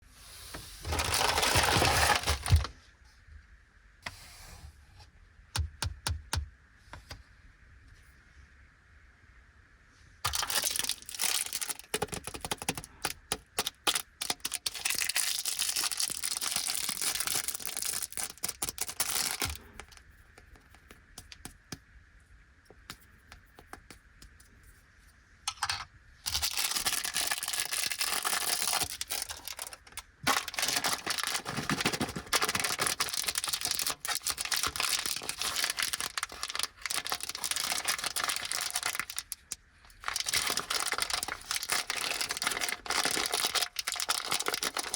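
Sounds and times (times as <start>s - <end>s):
plastic wrappers crinkling: 0.8s - 2.7s, 10.2s - 20.0s, 26.2s - 44.9s.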